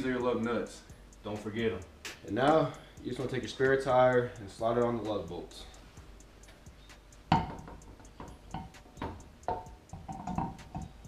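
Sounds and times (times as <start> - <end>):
wheel knocking and ringing on hub: 7.2 - 11.0
metal wheel clunk: 7.3 - 11.0.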